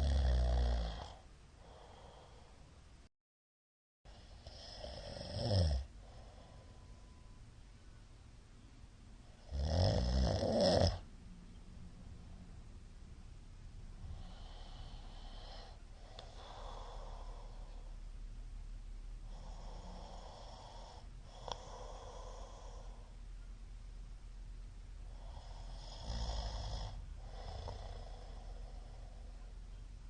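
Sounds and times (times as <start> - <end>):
man snoring: 0.0 - 2.2, 4.2 - 5.9, 9.4 - 11.0, 19.3 - 23.1, 25.1 - 29.2.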